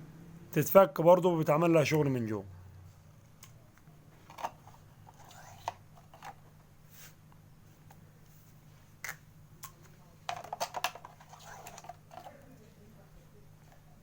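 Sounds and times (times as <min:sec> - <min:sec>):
plastic parts clicking: 0:04.2 - 0:06.5, 0:09.0 - 0:12.4.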